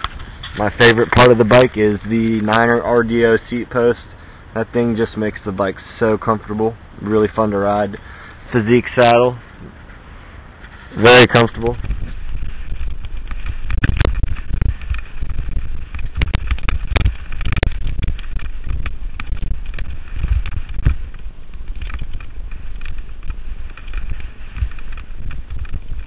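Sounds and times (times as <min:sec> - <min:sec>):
wind rumbling on microphone: 0:00.0 - 0:26.0
bike knocks and rattles: 0:11.2 - 0:26.0.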